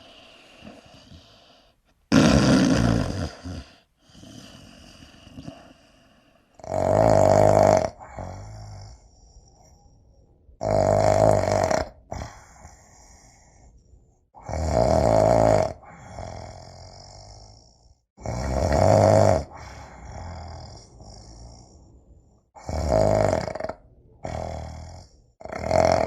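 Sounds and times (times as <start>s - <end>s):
quiet breaths: 0.0s - 2.1s, 2.8s - 6.6s, 7.9s - 10.6s, 11.9s - 14.5s, 15.7s - 22.7s
person snoring heavily: 0.0s - 9.1s, 10.6s - 13.2s, 14.4s - 22.0s, 22.6s - 26.0s.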